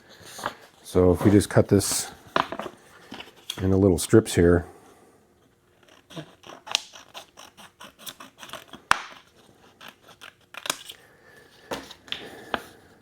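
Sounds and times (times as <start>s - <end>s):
scissors cutting vinyl: 5.8s - 10.9s.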